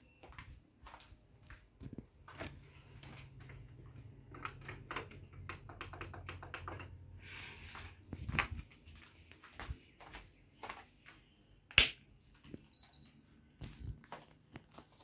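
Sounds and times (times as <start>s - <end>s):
air conditioner humming: 1.2s - 10.6s.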